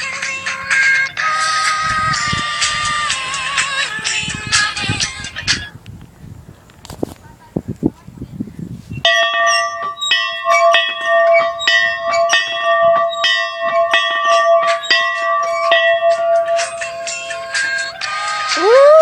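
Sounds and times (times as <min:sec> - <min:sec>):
bell ringing repeatedly: 0:09.1 - 0:17.9.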